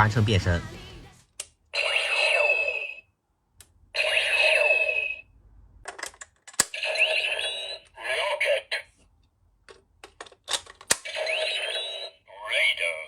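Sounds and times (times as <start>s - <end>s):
toy electronic sound effect: 1.8s - 3.0s, 4.0s - 5.2s, 6.7s - 8.9s, 10.9s - 13.0s.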